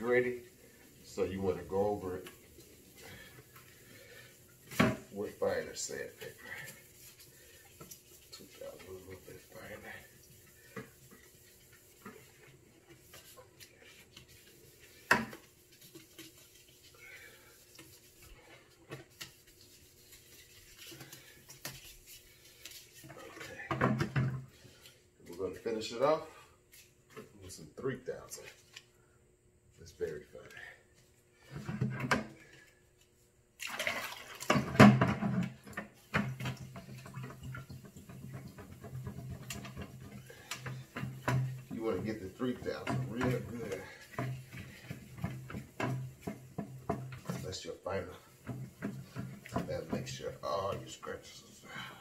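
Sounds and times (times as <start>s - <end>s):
wet sanding rubbing strokes: 0.0s - 23.5s, 39.5s - 51.5s.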